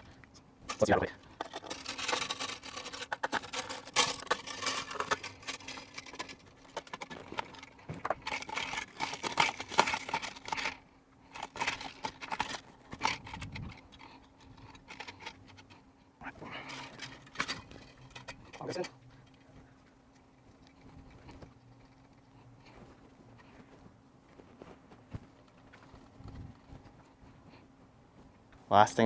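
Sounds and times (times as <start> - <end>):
metal hardware clicking and rattling: 0.7 - 15.8, 16.5 - 22.4.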